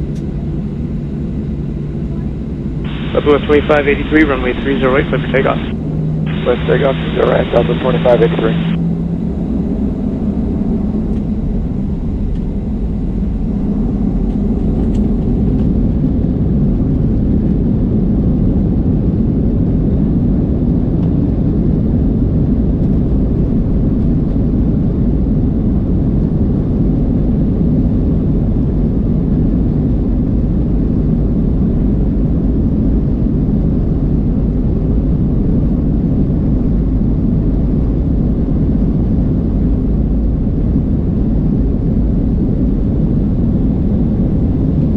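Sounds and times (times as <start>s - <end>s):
jet engines rumbling: 0.0s - 18.0s.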